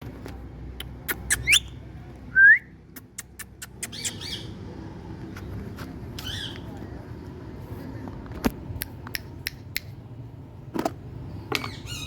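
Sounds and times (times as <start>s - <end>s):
harsh parakeet calls: 3.2s - 4.6s, 6.2s - 6.6s, 11.6s - 12.0s
parakeet whistling calls: 3.8s - 4.5s, 11.6s - 12.0s.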